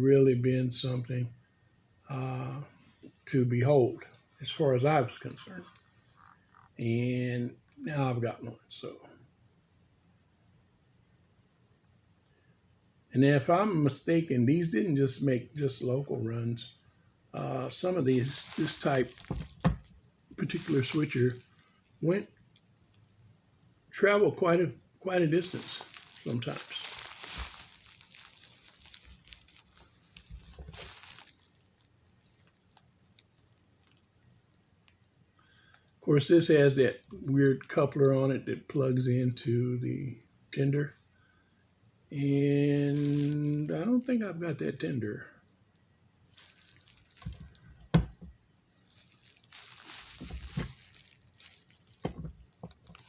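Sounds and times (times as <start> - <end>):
rustling: 17.7 - 24.0, 25.3 - 35.8, 42.9 - 44.1, 46.2 - 53.0.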